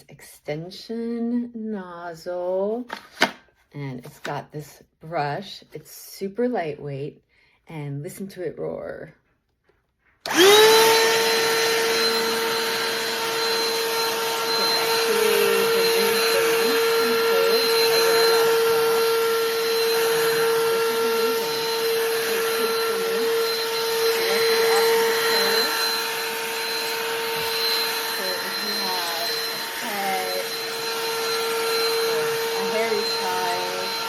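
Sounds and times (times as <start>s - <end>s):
handheld vacuum motor whining: 10.2s - 34.0s.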